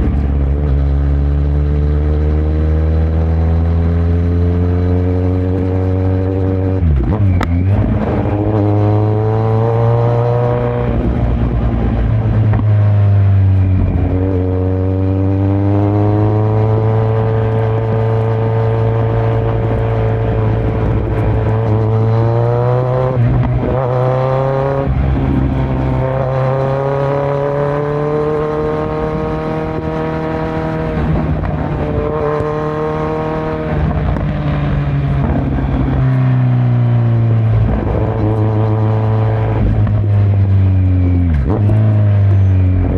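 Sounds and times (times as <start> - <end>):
motorcycle engine accelerating through gears: 0.0 - 42.9.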